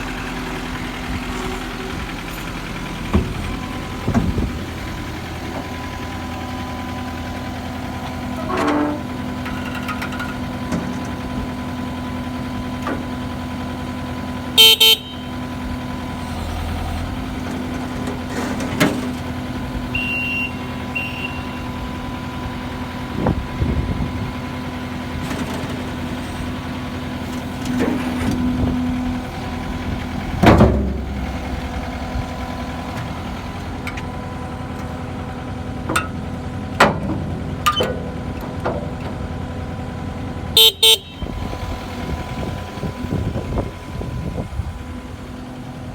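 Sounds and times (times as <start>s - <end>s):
diesel engine running: 0.0s - 45.9s
metal knocks and clanks: 8.4s - 11.2s, 30.3s - 31.8s
short loud beep: 19.9s - 21.7s.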